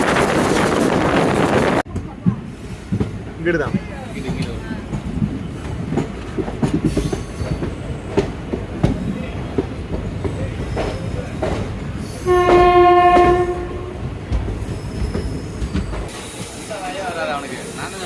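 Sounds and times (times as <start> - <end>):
train wheels clattering on rails: 0.0 - 18.0
train horn blast: 12.2 - 14.1.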